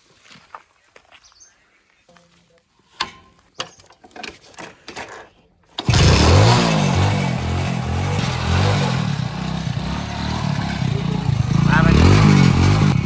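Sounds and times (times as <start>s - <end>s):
backhoe diesel engine revving: 5.8s - 13.0s.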